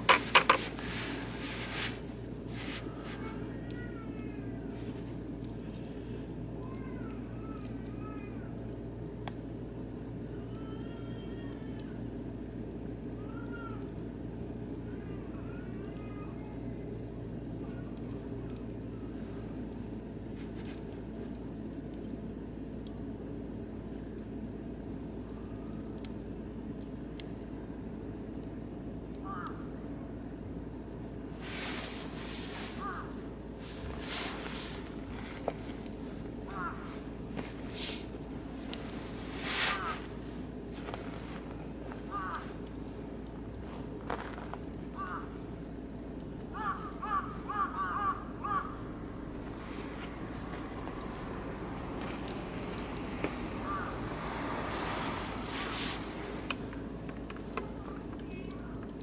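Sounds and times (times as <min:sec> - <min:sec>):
fire pops: 0:00.0 - 0:08.0, 0:30.6 - 0:59.0
wood fire crackling: 0:00.0 - 0:59.0
loud hissing: 0:31.3 - 0:42.7, 0:52.1 - 0:57.0
rising and falling calls: 0:31.5 - 0:40.4, 0:46.6 - 0:56.8.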